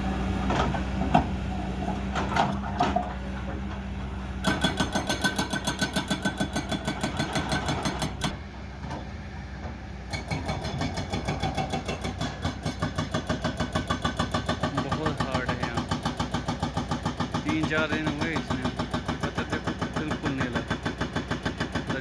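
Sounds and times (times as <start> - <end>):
diesel engine hum: 0.0 - 22.0
hydraulic breaker hammering rock: 4.4 - 8.4, 10.1 - 22.0.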